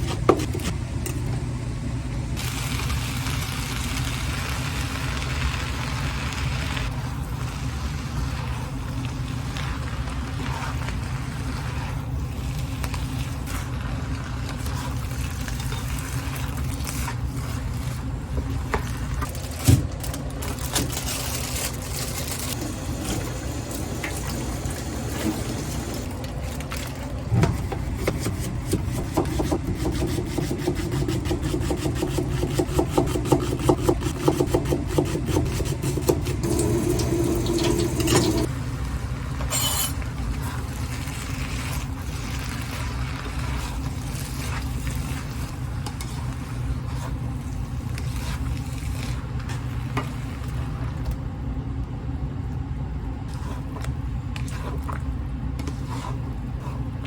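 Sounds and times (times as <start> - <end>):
spatula scraping a pot: 39.5 - 50.1, 55.6 - 57.0.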